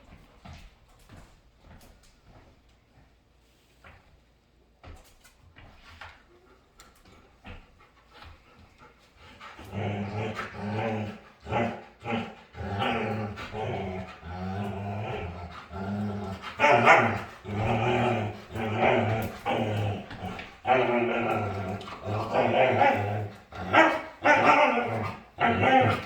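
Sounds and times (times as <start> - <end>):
dog growling: 9.5 - 26.0
dog barking: 16.6 - 17.3, 23.7 - 26.0.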